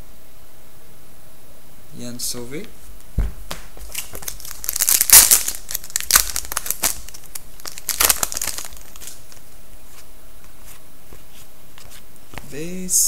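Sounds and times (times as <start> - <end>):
cards being handled: 3.5 - 12.6
card pack wrapper crinkling: 3.8 - 10.0.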